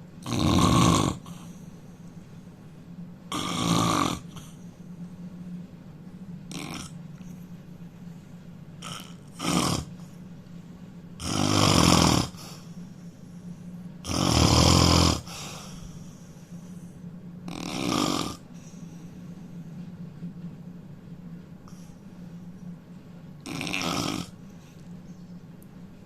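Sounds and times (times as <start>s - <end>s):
man snoring loudly: 0.2s - 1.5s, 3.3s - 4.4s, 6.5s - 7.0s, 8.8s - 9.9s, 11.2s - 12.4s, 14.0s - 15.5s, 17.5s - 18.5s, 23.4s - 24.4s.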